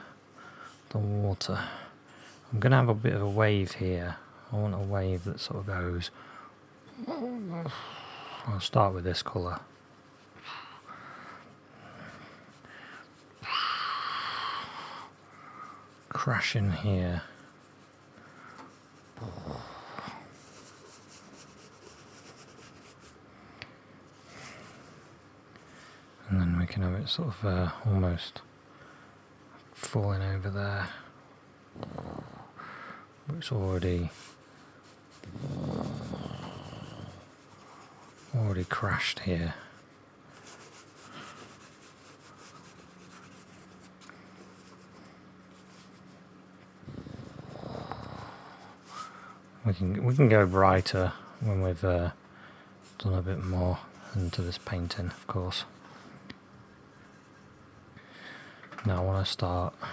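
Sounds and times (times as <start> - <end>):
faint low hum: 0.0 - 59.9
paintbrush strokes on paper: 8.8 - 13.4, 15.0 - 23.2, 33.5 - 46.8, 48.6 - 51.9, 52.8 - 57.8.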